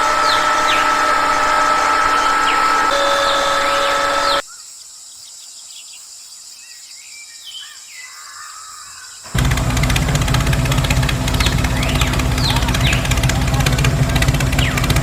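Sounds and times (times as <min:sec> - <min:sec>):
low-pitched engine: 0:00.0 - 0:04.4, 0:09.3 - 0:15.0
machine whine: 0:00.0 - 0:04.4, 0:09.3 - 0:15.0
birds chirping: 0:00.0 - 0:15.0
insect-like hiss: 0:04.4 - 0:09.2.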